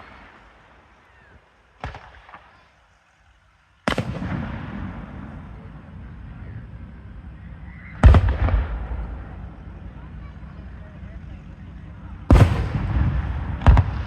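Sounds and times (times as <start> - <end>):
fireworks bursting with bangs: 0.0 - 14.0
rumble of firework bang: 7.9 - 10.1, 12.2 - 14.0.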